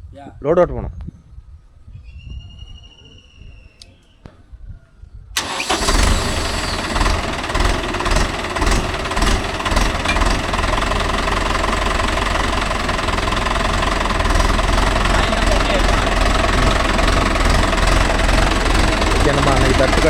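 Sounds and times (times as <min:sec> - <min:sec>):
tractor diesel engine rumbling: 0:05.4 - 0:20.0.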